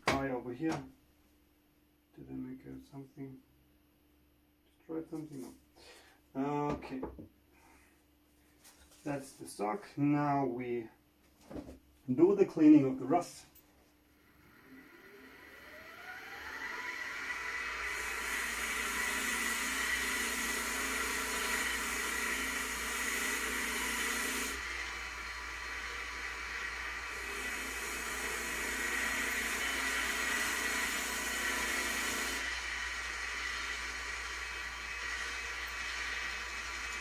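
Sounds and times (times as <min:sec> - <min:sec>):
rotary tool whine: 0:14.1 - 0:37.0.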